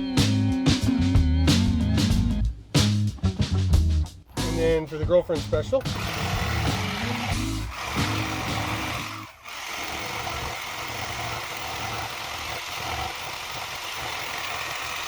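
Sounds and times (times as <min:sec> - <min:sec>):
power tool routing wood: 0:05.9 - 0:15.0.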